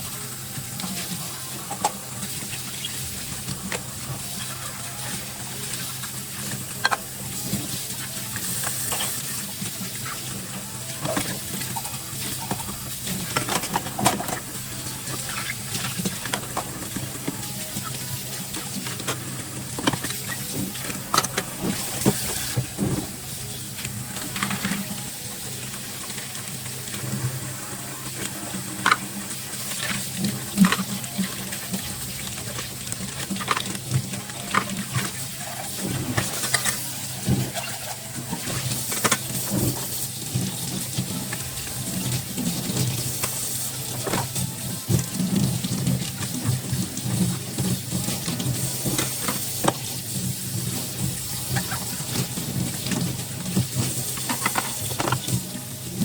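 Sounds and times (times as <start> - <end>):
tap water running: 0.0 - 56.0.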